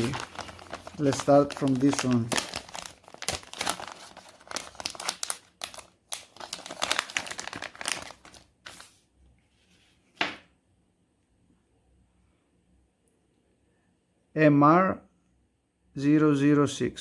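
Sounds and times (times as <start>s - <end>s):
paper crinkling in hands: 0.0s - 9.0s.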